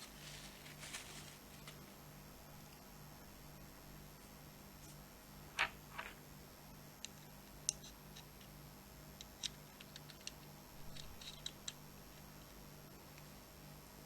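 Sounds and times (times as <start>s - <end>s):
small clicks and taps of hard parts: 7.0s - 8.6s, 9.2s - 11.8s.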